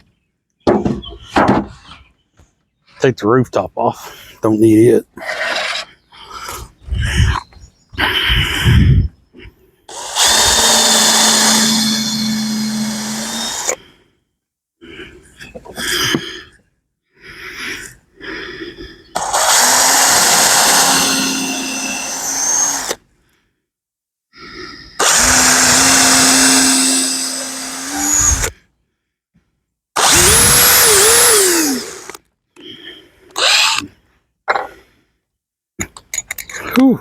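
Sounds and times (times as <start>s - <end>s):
power drill driving screws into wood: 9.9s - 13.8s, 19.2s - 23.0s, 25.0s - 28.5s, 30.0s - 32.2s.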